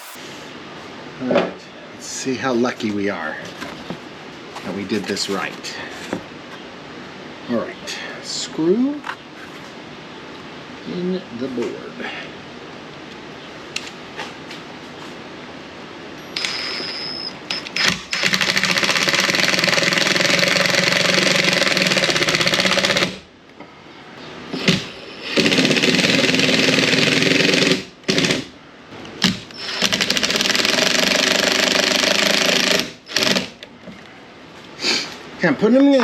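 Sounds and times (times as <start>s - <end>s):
power driver driving screws: 16.4s - 23.2s, 24.6s - 28.5s, 29.2s - 33.6s.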